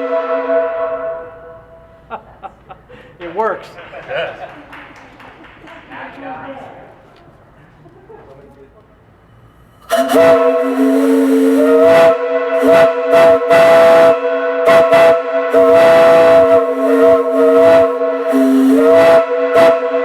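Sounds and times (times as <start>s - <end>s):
steam whistle chord: 0.0s - 1.9s, 9.7s - 20.0s
steam hissing: 9.2s - 19.9s.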